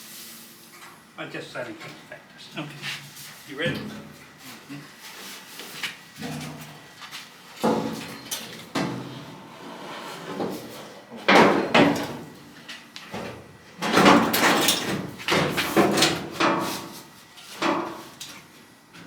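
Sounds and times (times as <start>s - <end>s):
sheet metal panels banging: 11.2s - 12.3s, 13.8s - 16.8s.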